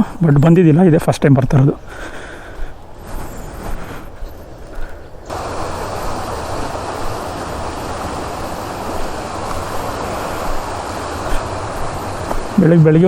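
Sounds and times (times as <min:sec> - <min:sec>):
waterfall rushing: 0:05.3 - 0:13.0.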